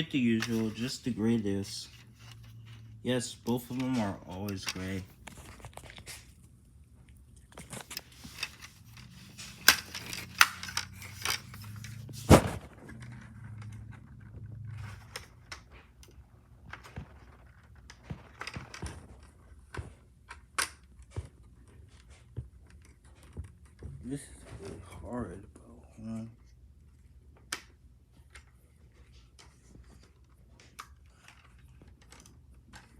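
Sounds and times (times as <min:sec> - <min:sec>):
plastic cases clicking and scraping: 0:00.0 - 0:06.4, 0:07.4 - 0:21.2.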